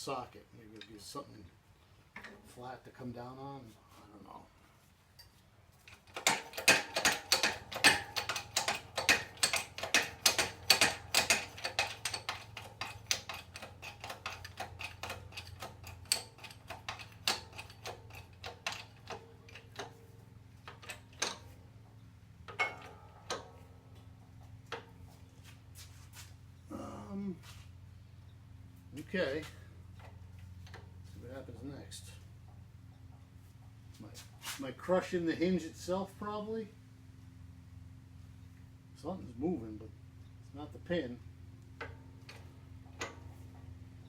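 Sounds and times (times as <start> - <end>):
shop press metallic clicking: 5.9 - 20.0.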